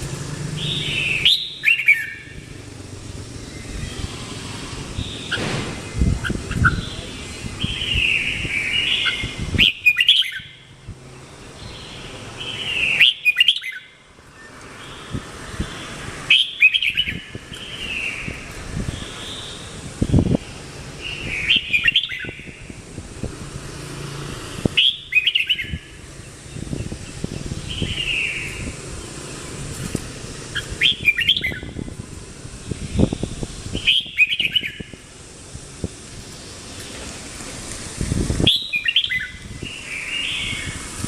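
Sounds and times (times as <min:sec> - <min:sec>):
bird singing whistled phrases: 0:00.6 - 0:02.4, 0:06.5 - 0:10.6, 0:12.5 - 0:14.0, 0:16.3 - 0:18.2, 0:21.1 - 0:22.4, 0:24.8 - 0:25.8, 0:30.6 - 0:31.7, 0:33.8 - 0:34.9, 0:38.5 - 0:40.7.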